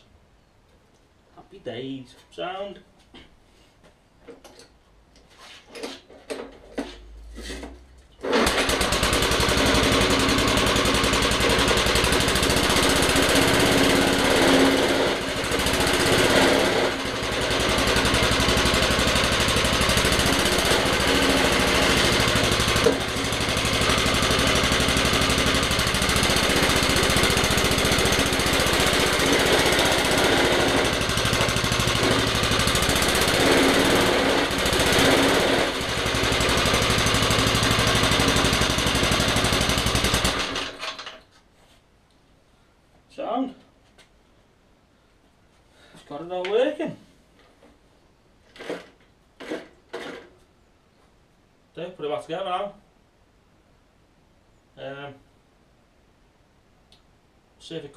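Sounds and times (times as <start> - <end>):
lawnmower engine starting and running: 5.5 - 41.4, 48.4 - 50.5.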